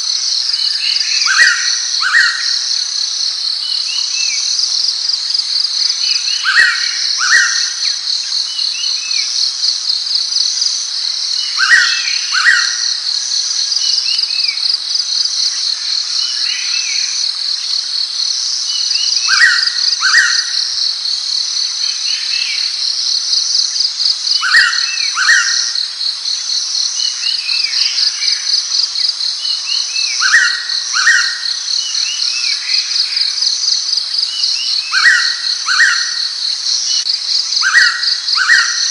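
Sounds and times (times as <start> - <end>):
insect trill: 0.0 - 38.9.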